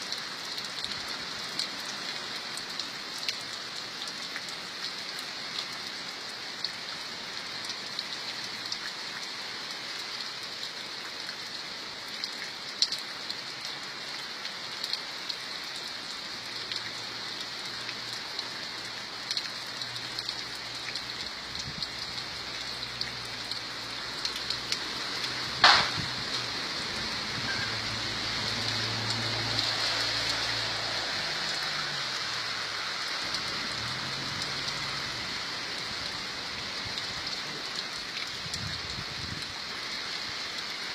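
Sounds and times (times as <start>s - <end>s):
steady rain falling: 0.0s - 40.9s
sharp loud tap: 25.6s - 26.2s.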